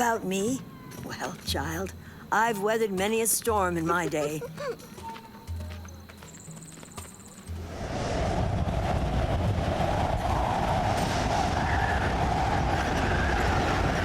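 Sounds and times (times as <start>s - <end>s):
wind rushing: 7.5s - 14.0s
deep continuous rumble: 7.6s - 14.0s.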